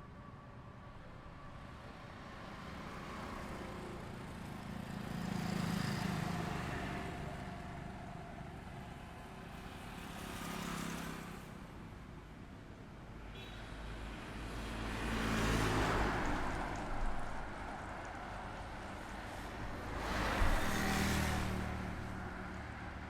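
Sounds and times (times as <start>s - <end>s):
steady traffic hum: 0.0s - 23.0s
vehicles passing by: 2.4s - 11.7s, 13.9s - 23.0s.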